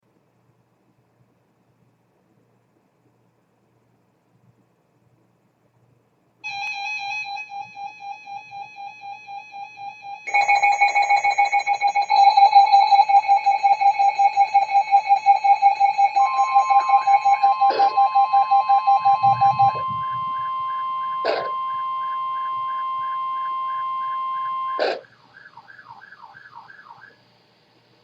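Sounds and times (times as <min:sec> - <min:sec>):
rapidly pulsing beep: 0:06.5 - 0:25.9
steady alert tone: 0:13.3 - 0:25.0.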